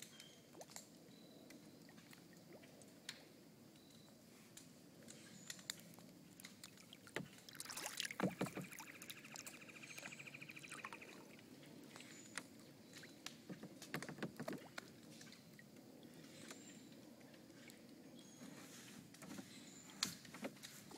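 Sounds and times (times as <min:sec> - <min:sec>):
faint water sounds: 0:00.0 - 0:20.9
paddle knocks and splashes: 0:07.0 - 0:09.1, 0:13.4 - 0:14.9.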